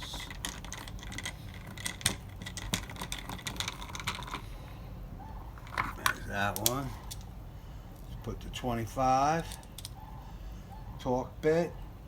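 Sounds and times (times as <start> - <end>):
hand tools and screws clicking: 0.0 - 4.5, 5.6 - 7.3, 9.4 - 10.0.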